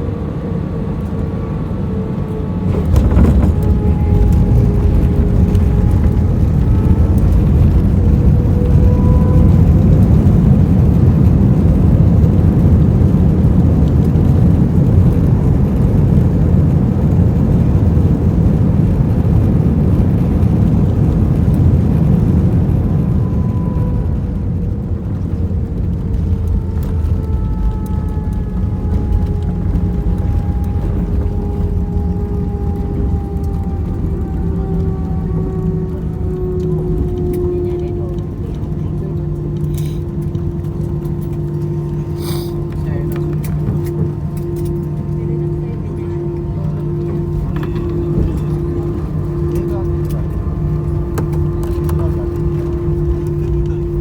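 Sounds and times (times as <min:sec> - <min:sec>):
engine and runway rumble: 0:00.0 - 0:54.0
whining engine tones: 0:00.0 - 0:54.0
airliner touchdown jolt: 0:02.4 - 0:08.8.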